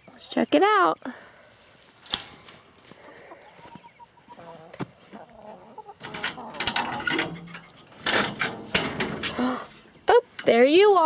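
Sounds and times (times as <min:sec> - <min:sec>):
rustling and scraping: 0:01.6 - 0:05.4, 0:06.0 - 0:10.6
hens clucking: 0:02.5 - 0:10.6.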